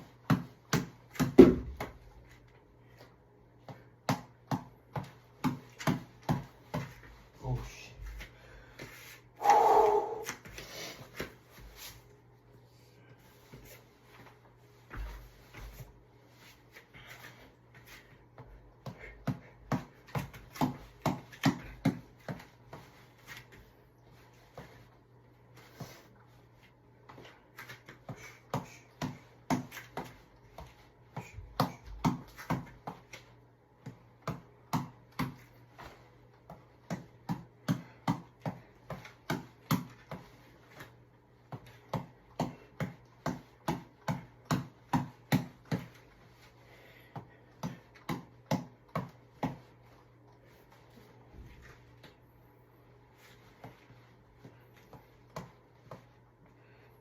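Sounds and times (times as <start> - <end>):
reflex ball being punched: 0.0 - 2.0, 3.6 - 7.0, 18.8 - 22.8, 28.0 - 33.2, 33.8 - 35.6, 36.4 - 40.4, 41.5 - 46.0, 47.1 - 49.7.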